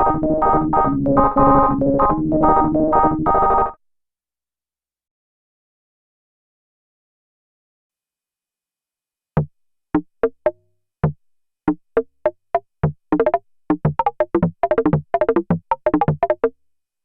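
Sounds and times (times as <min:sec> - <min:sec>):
synthesizer plucky notes: 0:00.0 - 0:03.8, 0:13.2 - 0:16.5.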